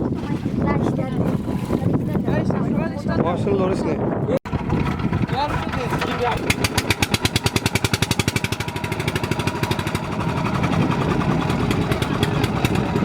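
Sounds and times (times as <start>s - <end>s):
motorboat engine chugging: 4.5s - 13.0s.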